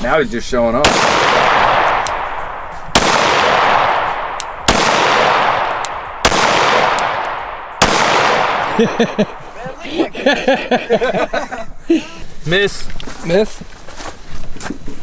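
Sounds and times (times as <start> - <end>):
pistol shots echoing: 0.8 - 9.1.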